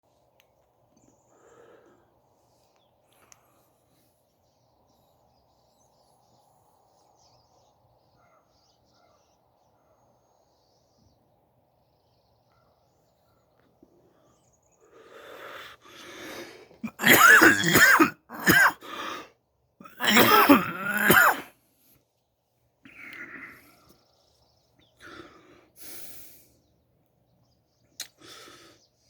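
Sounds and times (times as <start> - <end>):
raspy breaths: 1.0 - 4.3, 13.8 - 22.0, 22.8 - 24.1, 24.8 - 26.8, 28.0 - 29.0
throat clearing: 16.8 - 18.9, 19.8 - 21.5
man coughing: 16.8 - 19.0, 19.8 - 21.5.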